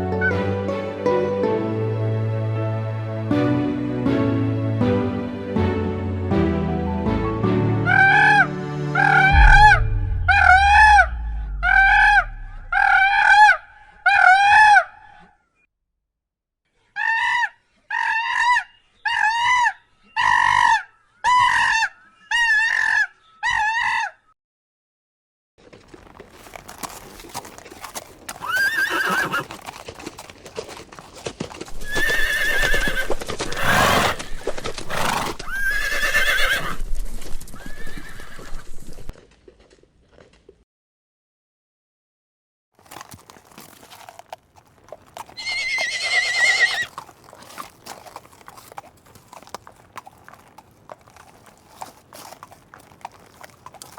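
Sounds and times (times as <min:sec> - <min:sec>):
horse snorting and shuffling: 0:25.7 - 0:39.1, 0:42.8 - 0:53.9
horse whinnies: 0:28.3 - 0:29.7, 0:31.7 - 0:36.8, 0:37.6 - 0:39.0, 0:45.1 - 0:48.2.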